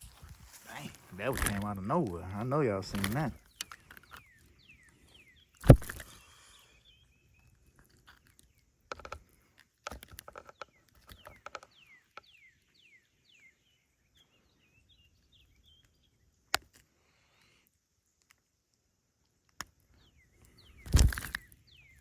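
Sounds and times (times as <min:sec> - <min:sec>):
clicking and rattling: 0:07.8 - 0:11.8.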